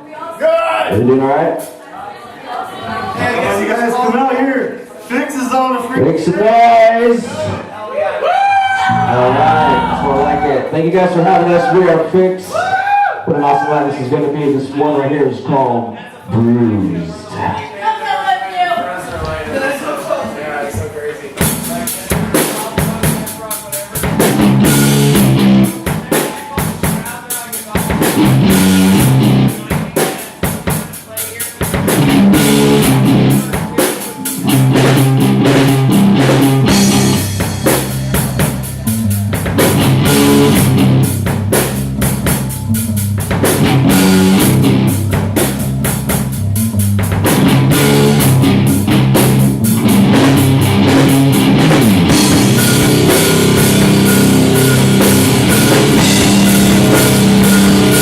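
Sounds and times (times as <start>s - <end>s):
rock band playing: 8.7s - 12.1s, 21.4s - 58.0s
guitar: 8.7s - 12.6s, 24.0s - 26.7s, 27.8s - 30.8s, 31.6s - 58.0s
drum kit: 8.8s - 11.0s, 21.4s - 58.0s.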